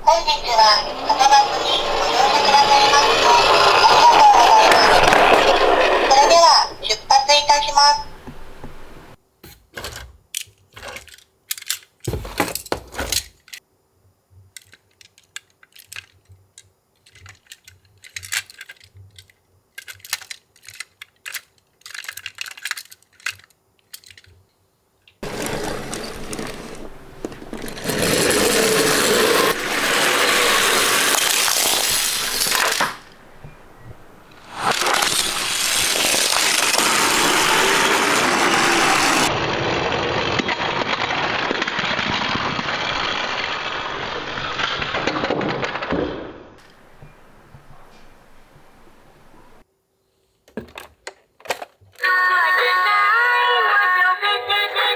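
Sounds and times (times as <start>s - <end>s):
small toy parts clicking: 10.2s - 12.1s, 14.5s - 24.5s, 25.2s - 33.2s, 34.4s - 39.3s.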